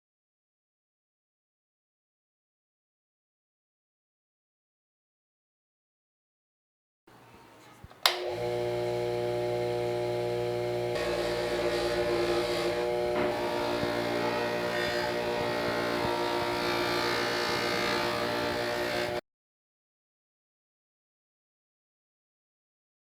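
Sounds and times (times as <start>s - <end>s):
power tool motor humming: 7.4s - 19.2s.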